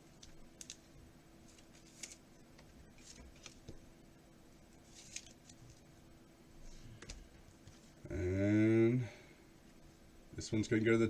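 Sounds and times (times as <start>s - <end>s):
low steady hum: 0.0s - 11.0s
trading cards rustling and sliding: 0.6s - 2.2s, 2.9s - 3.8s, 4.7s - 5.8s.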